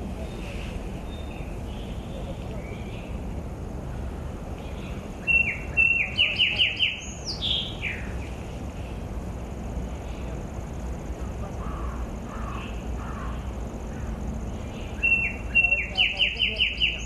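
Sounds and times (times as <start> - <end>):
bird calling descending notes: 5.2 - 8.3, 14.9 - 17.0.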